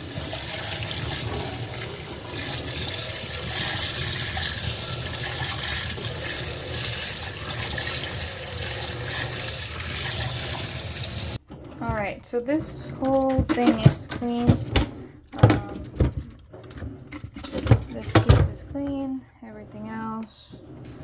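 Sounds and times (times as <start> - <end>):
water running from a tap: 0.0 - 11.4.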